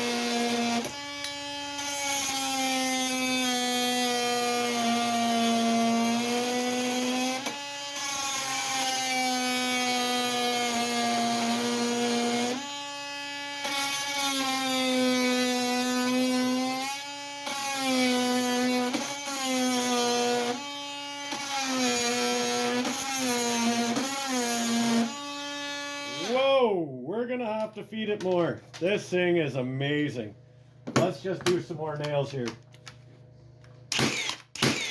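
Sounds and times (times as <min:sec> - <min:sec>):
multi-tool cutting metal: 0:00.0 - 0:26.4, 0:33.9 - 0:34.9.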